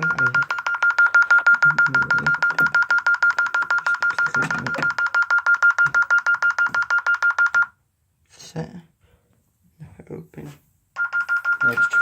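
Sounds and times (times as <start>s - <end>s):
alarm beeping rapidly: 0.0s - 7.7s, 11.0s - 12.0s.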